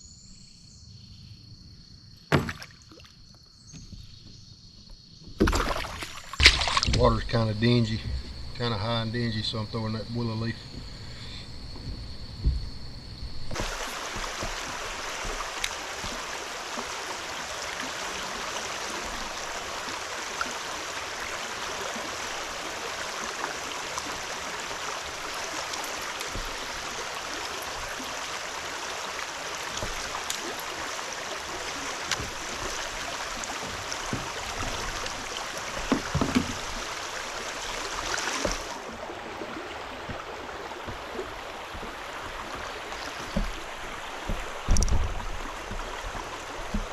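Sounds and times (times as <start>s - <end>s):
flowing creek water: 5.3s - 46.9s
low knocks: 6.4s - 16.2s, 40.8s - 46.9s.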